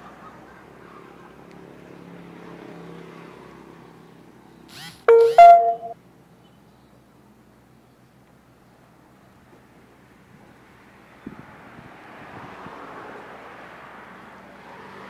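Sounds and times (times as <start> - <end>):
low rumble of traffic: 0.0 - 15.0
vehicle horn honking: 4.8 - 6.0.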